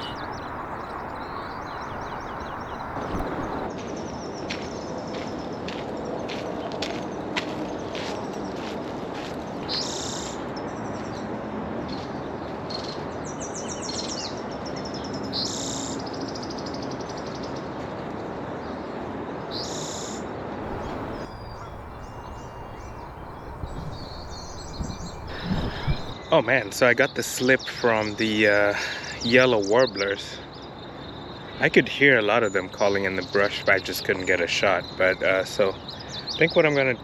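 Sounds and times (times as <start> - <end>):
songbirds chirping and trilling: 0.0 - 3.7, 20.6 - 26.2
steady background rush: 20.6 - 26.2.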